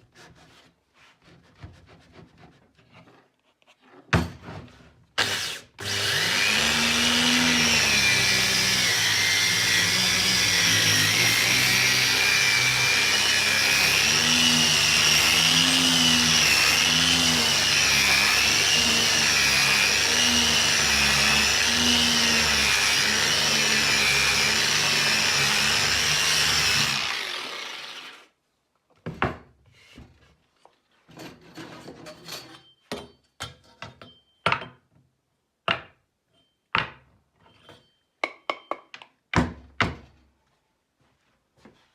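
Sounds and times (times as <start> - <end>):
sanding machine running: 5.2 - 28.3.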